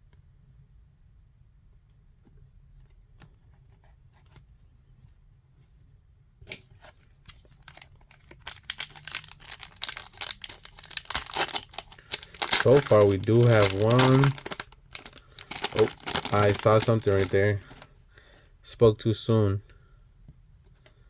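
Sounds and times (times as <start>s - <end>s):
foil wrapper crinkling and tearing: 7.4s - 17.9s.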